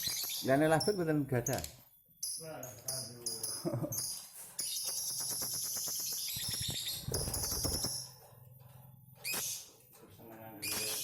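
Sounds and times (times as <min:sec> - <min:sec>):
bird chattering trill: 0:03.0 - 0:08.1.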